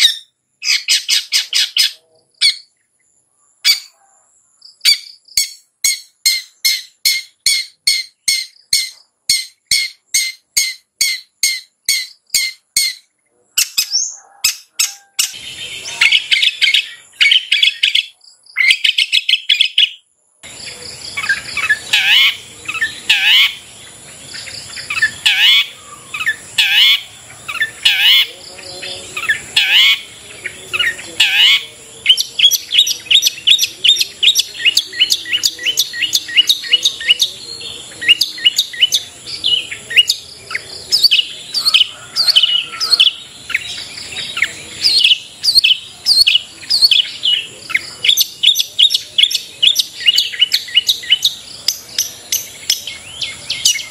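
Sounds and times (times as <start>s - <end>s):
bird singing: 0.0s - 53.9s
high insect drone: 20.4s - 53.9s.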